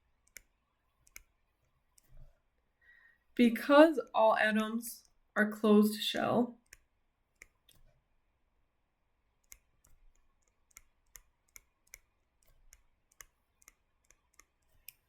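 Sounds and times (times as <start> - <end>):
writing tool clicks and taps: 0.2 - 2.4, 6.6 - 8.0, 9.4 - 15.0.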